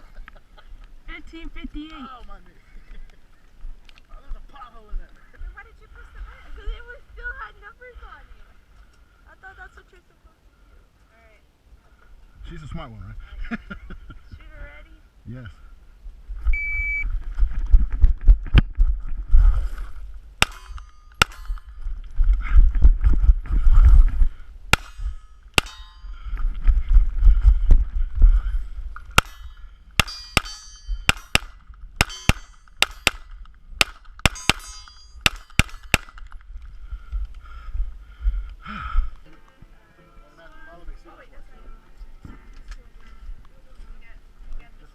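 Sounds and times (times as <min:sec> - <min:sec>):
low rumbling: 0:15.7 - 0:35.3
gunshots: 0:20.4 - 0:21.6, 0:24.7 - 0:25.9, 0:29.2 - 0:36.3.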